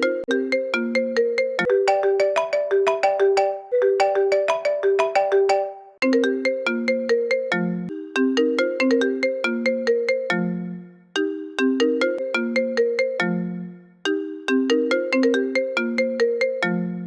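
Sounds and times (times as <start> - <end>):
phone ringtone melody: 0.0 - 17.0.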